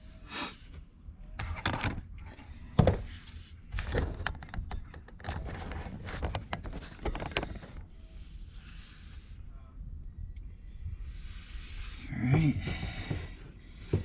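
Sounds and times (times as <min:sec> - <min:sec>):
clicks knocks and rustles: 0:03.7 - 0:07.8.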